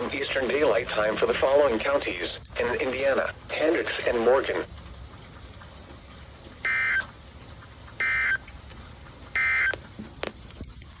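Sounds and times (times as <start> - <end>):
faint radio hiss: 0.0 - 4.8
two-tone digital data squawks: 6.7 - 7.1, 8.0 - 8.4, 9.4 - 9.8.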